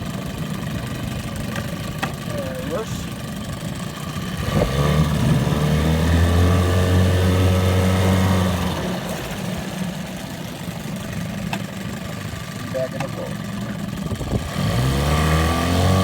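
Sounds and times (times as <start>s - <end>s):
outboard motor running: 0.0s - 16.0s.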